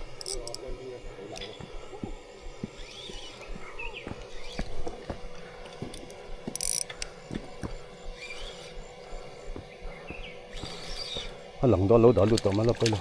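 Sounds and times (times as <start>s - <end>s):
fishing reel ratcheting clicks: 0.0s - 0.6s, 5.9s - 7.2s, 12.1s - 13.0s.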